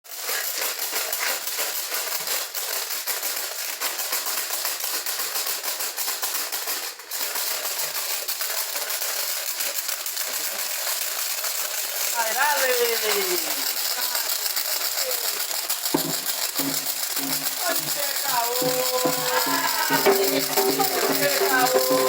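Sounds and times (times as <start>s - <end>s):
wood fire crackling and hissing: 6.6s - 22.0s.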